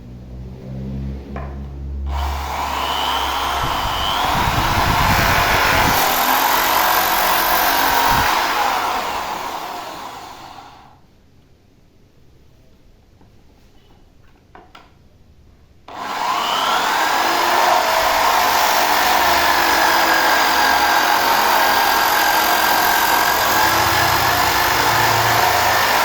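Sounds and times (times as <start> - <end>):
electric drill sanding: 2.1 - 10.8, 15.9 - 26.0.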